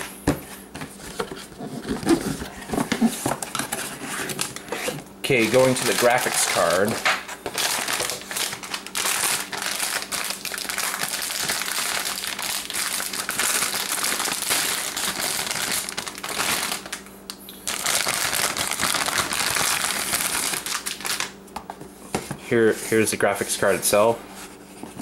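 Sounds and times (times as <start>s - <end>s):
plastic packaging crinkling: 2.1s - 21.4s.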